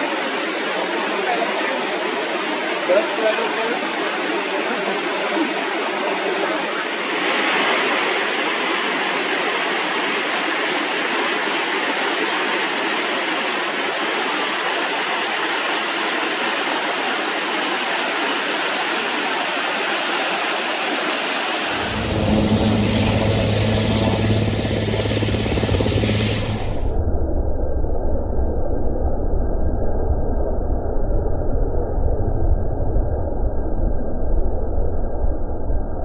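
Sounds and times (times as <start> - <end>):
flowing water rushing: 0.0 - 26.9
steady low hum: 21.7 - 36.0.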